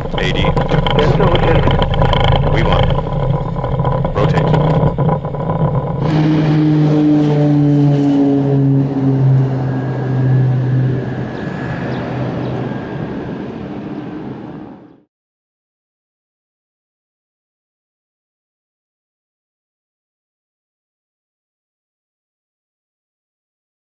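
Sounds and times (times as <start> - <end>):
jet engines moving away: 0.0 - 15.1.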